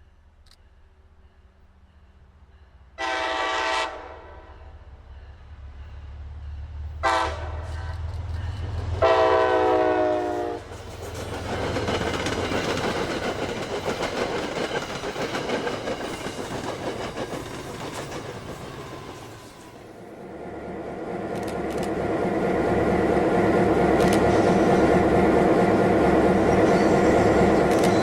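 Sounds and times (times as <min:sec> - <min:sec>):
train horn: 0:03.0 - 0:04.8, 0:07.0 - 0:07.9, 0:09.0 - 0:10.7
train wheels rolling on rails: 0:05.7 - 0:28.0.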